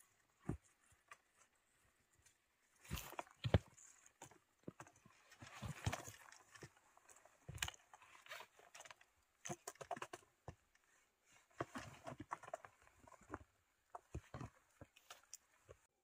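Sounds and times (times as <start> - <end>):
footsteps on stone and gravel: 2.8 - 6.8.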